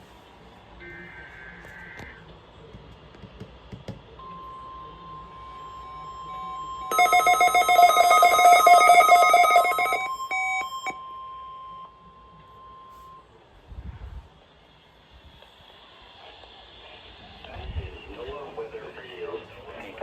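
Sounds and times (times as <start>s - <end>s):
rapidly pulsing alarm beeps: 4.2s - 13.3s
short beeps: 4.2s - 13.3s
steady high alarm tone: 4.2s - 13.3s.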